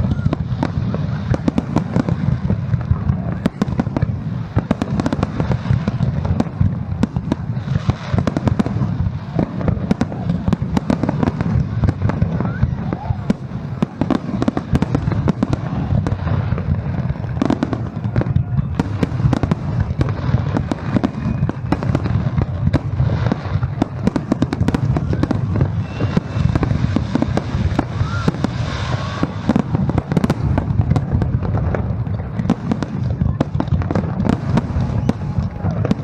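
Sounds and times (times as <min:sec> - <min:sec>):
fireworks bangs and crackling: 0:00.0 - 0:36.0.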